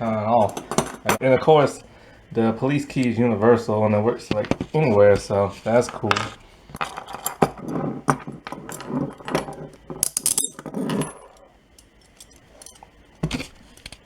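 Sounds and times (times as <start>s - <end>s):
handcuffs clicking and rattling: 6.7s - 14.0s
metallic jingle: 6.8s - 12.9s.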